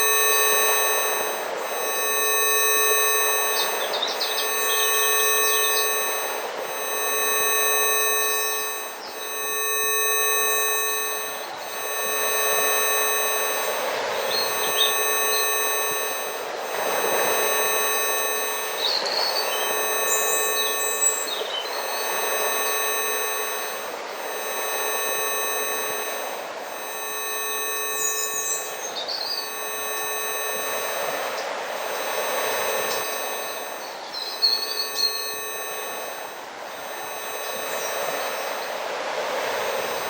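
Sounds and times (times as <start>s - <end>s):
steady electronic tones: 0.0s - 40.0s
hissing nature sounds: 2.8s - 6.7s, 13.8s - 22.6s, 28.0s - 30.1s, 30.7s - 40.0s
bird chirps: 3.4s - 6.0s, 14.2s - 15.5s, 18.7s - 22.4s, 28.0s - 29.5s, 33.7s - 35.4s.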